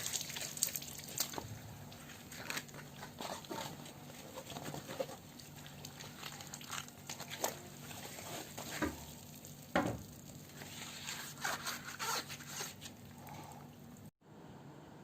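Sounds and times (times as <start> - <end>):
faint steady hum: 0.0 - 15.0
fabric rustling and scraping: 6.3 - 9.2, 10.5 - 13.0.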